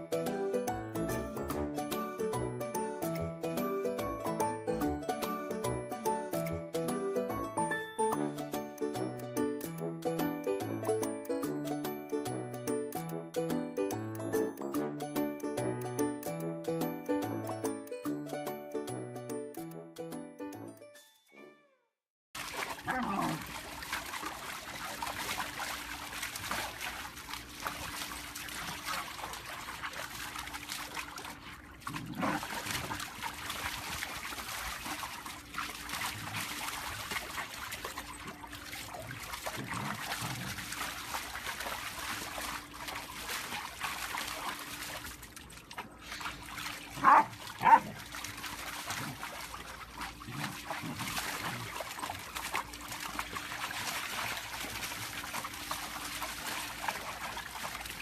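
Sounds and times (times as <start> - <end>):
puppy barking sharply: 47.0 - 47.9.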